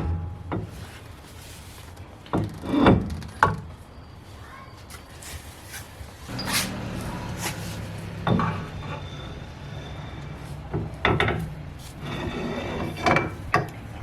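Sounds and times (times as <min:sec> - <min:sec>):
metal knocks and scraping: 0:00.0 - 0:01.3, 0:06.3 - 0:14.0
metallic ring: 0:06.3 - 0:13.7.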